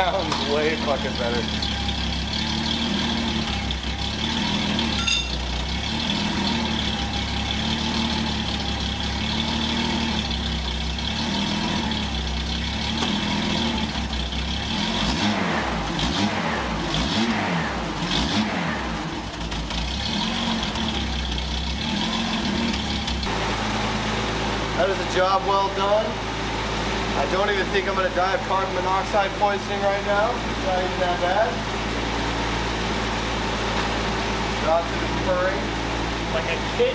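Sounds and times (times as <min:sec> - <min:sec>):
car engine idling: 0:00.0 - 0:36.9.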